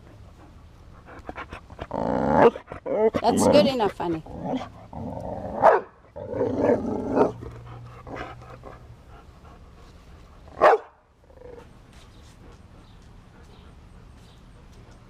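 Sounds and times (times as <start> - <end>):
dog barking: 5.6 - 5.9, 10.6 - 11.0.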